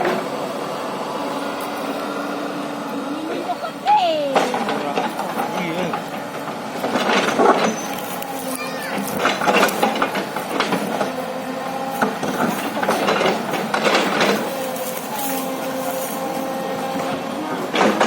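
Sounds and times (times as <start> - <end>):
excavator engine and hydraulics whining: 0.0 - 18.0
metal knocks and clanks: 4.3 - 8.0, 9.0 - 11.2, 12.0 - 14.6.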